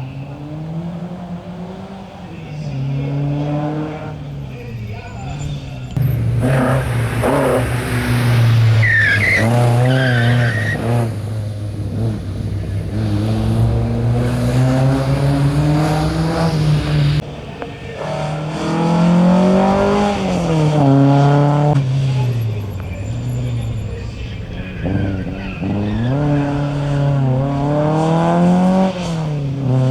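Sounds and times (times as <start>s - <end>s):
car accelerating hard: 0.0s - 29.9s
rally car engine revving: 0.0s - 29.9s
tyre squeal: 3.8s - 17.2s, 21.7s - 28.2s.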